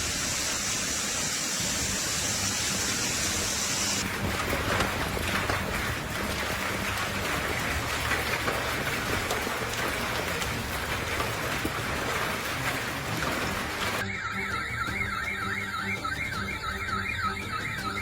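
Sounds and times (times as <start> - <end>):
heavy rain falling: 0.0 - 18.0
car alarm siren warbling: 14.0 - 18.0.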